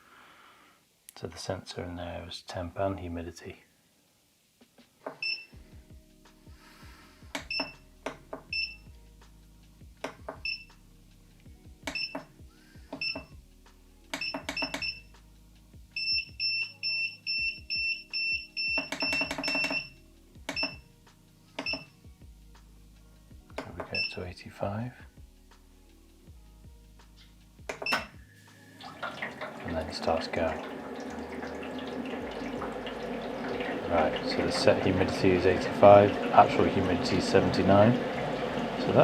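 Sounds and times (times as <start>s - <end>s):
keypad beeps: 5.2s - 5.5s, 7.4s - 7.8s, 8.5s - 8.8s, 10.4s - 10.7s, 11.9s - 12.3s, 13.0s - 13.3s, 14.2s - 15.0s, 16.0s - 20.8s, 21.6s - 21.9s, 23.9s - 24.2s, 27.7s - 28.1s.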